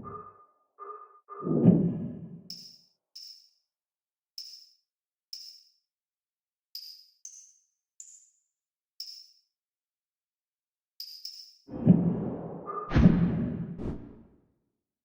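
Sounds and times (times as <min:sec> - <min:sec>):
high-pitched percussive ticks: 0:02.5 - 0:03.6, 0:04.4 - 0:05.8, 0:09.0 - 0:09.5, 0:11.0 - 0:11.7.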